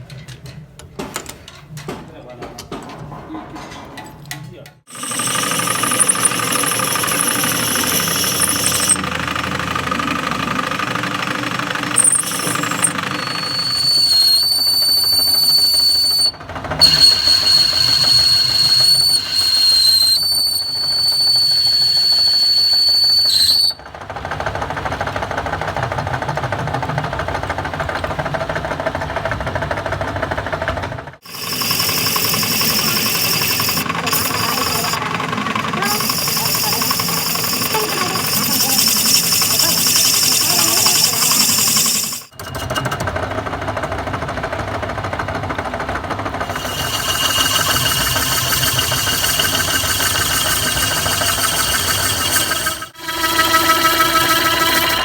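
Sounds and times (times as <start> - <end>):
metal grinding machinery: 3.0 - 23.8, 31.2 - 43.4, 46.4 - 55.0.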